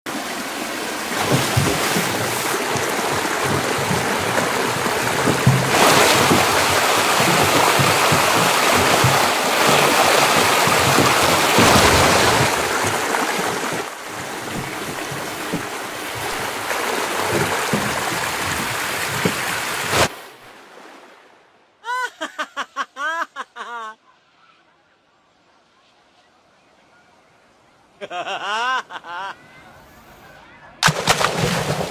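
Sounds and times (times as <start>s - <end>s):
water pouring and splashing: 0.1s - 21.2s, 30.8s - 31.9s.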